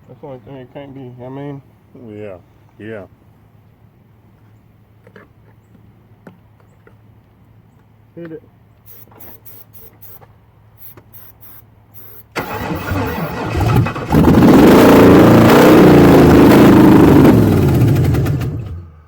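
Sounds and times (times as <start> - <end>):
starter cranking engine: 12.3 - 18.9
car engine running loudly: 12.4 - 18.9.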